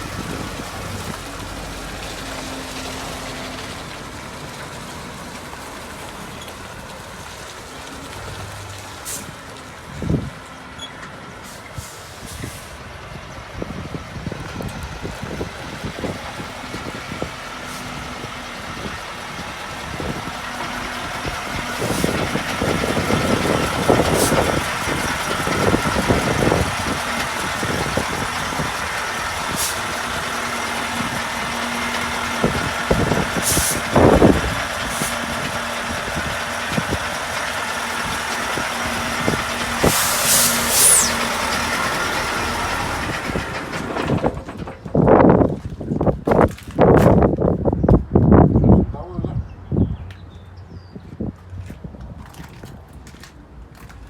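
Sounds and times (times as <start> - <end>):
diesel truck engine running: 0.0 - 54.0
short high hisses: 39.8 - 41.3.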